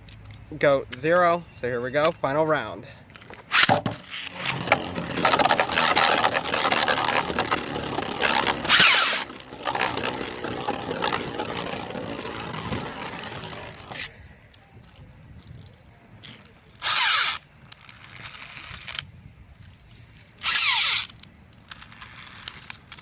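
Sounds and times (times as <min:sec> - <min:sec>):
spinning tops clashing: 0:03.5 - 0:14.1
spinning tops whirring: 0:03.5 - 0:14.1, 0:16.8 - 0:17.4, 0:20.4 - 0:21.1.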